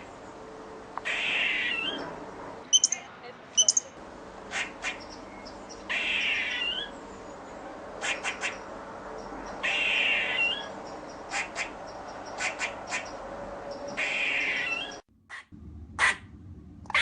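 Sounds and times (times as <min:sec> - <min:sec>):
squirrel barking: 0:02.8 - 0:03.0, 0:03.6 - 0:06.9, 0:08.0 - 0:08.7, 0:09.5 - 0:13.2.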